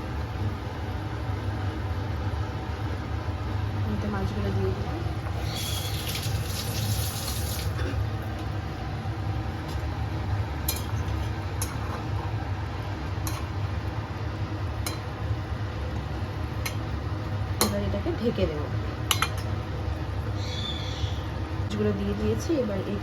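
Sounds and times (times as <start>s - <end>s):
curry boiling and bubbling: 5.0s - 20.4s
hiss: 5.4s - 7.7s
steady low hum: 7.7s - 23.0s.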